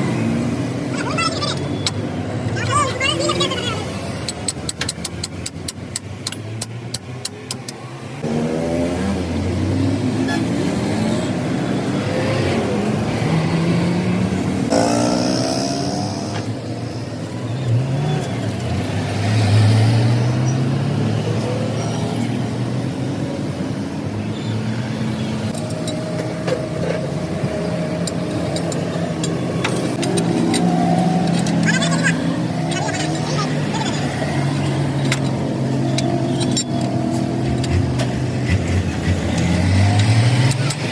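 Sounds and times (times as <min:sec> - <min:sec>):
vehicle engine revving: 0:08.2 - 0:16.6, 0:17.7 - 0:22.6, 0:25.2 - 0:40.9.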